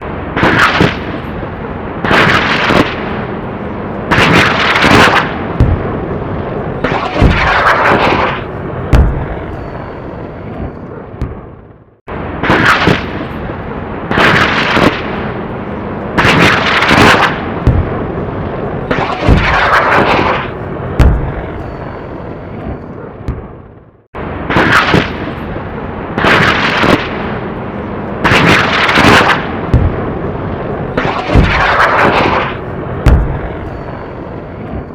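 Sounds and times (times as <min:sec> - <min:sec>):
continuous rumble: 0:00.0 - 0:34.9
rocket launches with low bang: 0:00.0 - 0:34.9.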